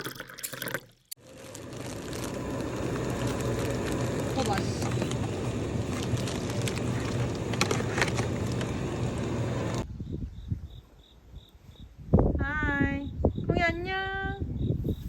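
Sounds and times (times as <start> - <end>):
moving car road and engine noise: 1.6 - 9.9.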